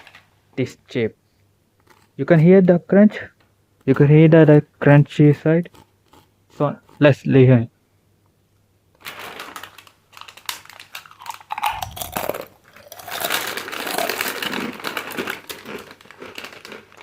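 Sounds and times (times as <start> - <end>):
chip crunching being chewed: 1.8 - 2.1, 10.1 - 17.0.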